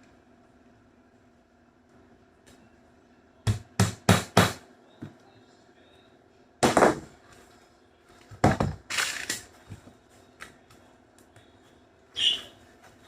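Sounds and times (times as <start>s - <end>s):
hammer striking nails into wood: 3.5s - 4.6s.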